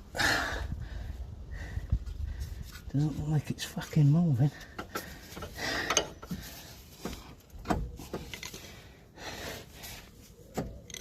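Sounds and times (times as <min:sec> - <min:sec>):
hand tools knocking and scraping: 0:04.6 - 0:08.4.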